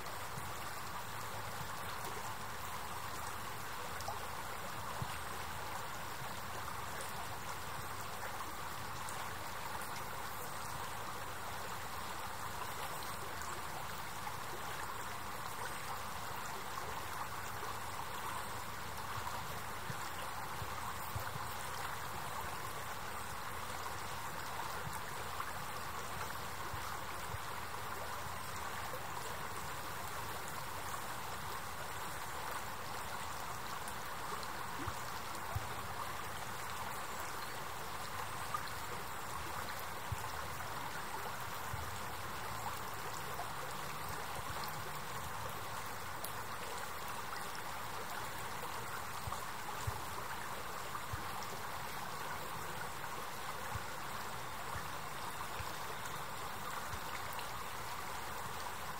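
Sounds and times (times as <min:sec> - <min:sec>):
river water flowing: 0:00.0 - 0:58.9.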